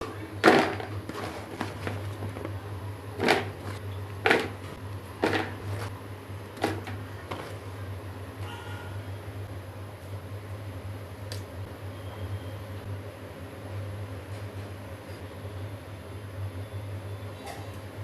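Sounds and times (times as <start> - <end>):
steady low hum: 0.0 - 17.3
kitchen knocks and clatter: 0.4 - 2.6, 3.2 - 5.9, 6.6 - 7.6.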